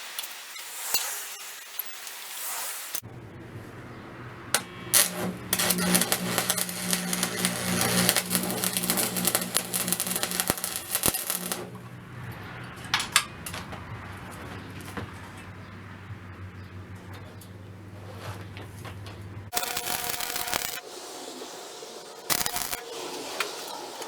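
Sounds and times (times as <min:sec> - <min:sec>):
steady low hum: 0:03.0 - 0:12.9.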